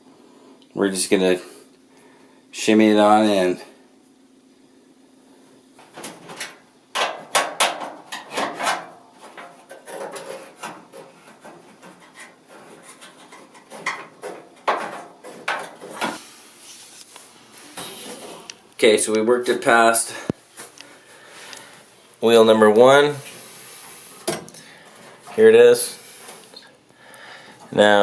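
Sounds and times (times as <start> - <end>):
scraping and rubbing metal parts: 6.2 - 18.5.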